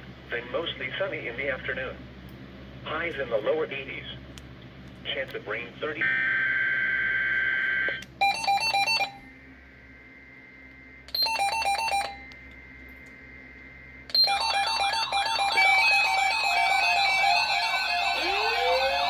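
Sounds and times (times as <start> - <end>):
digital data tone bursts: 14.1 - 19.0
warbling tone: 14.3 - 19.0.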